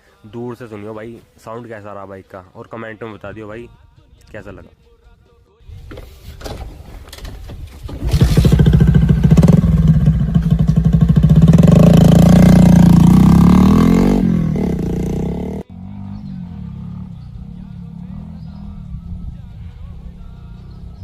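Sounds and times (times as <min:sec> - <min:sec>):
motorcycle engine revving: 0:07.8 - 0:21.0.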